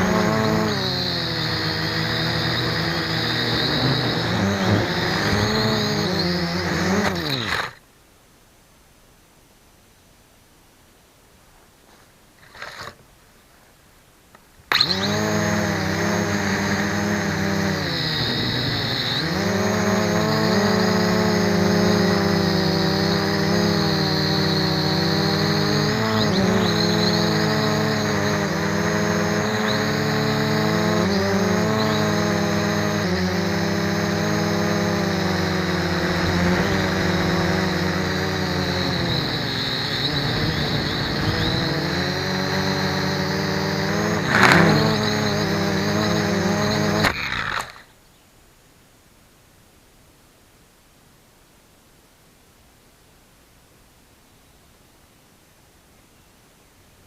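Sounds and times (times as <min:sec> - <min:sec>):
drone propellers buzzing: 0:00.0 - 0:07.8, 0:14.7 - 0:47.9.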